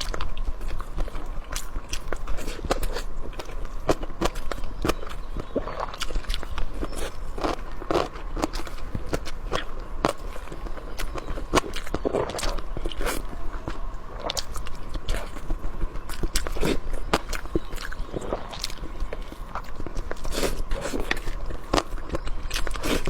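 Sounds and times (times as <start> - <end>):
person chewing crunchy food: 0.0 - 23.0
wet mouth sounds: 5.6 - 23.0.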